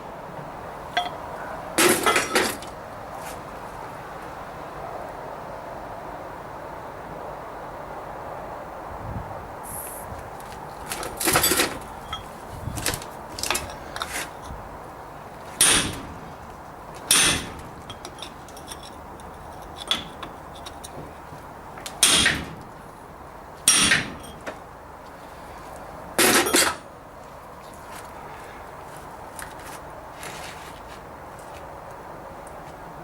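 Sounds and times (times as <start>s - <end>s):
hammer striking metal chisel: 15.6s - 16.0s, 17.1s - 17.6s, 22.0s - 22.6s, 23.7s - 24.4s.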